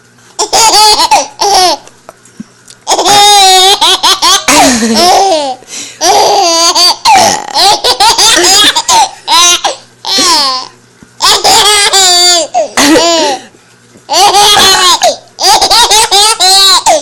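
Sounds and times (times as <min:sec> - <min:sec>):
young child laughing: 0:02.9 - 0:13.5, 0:14.1 - 0:17.0.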